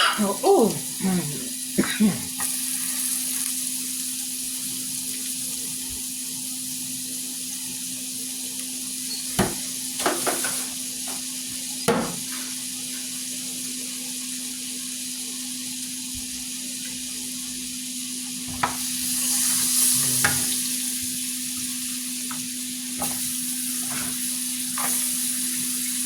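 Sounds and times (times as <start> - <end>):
food sizzling: 0.0 - 26.0.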